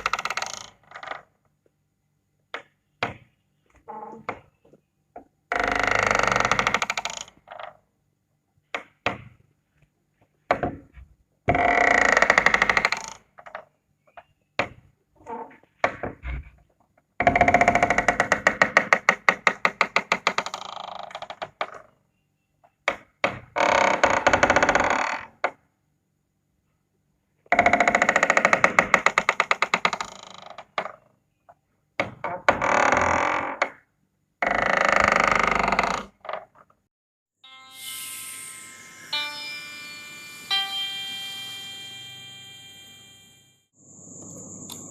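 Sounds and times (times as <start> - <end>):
door hinge creaking: 0.0 - 1.4, 3.8 - 4.6, 5.5 - 7.8, 11.5 - 13.7, 17.2 - 21.9, 23.5 - 25.6, 27.5 - 31.1, 32.0 - 33.8, 34.4 - 36.6.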